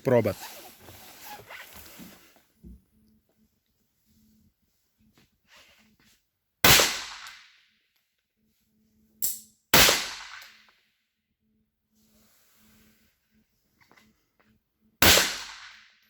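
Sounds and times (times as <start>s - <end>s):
pistol shots with echo: 6.7s - 7.5s, 9.8s - 10.6s, 15.0s - 15.8s.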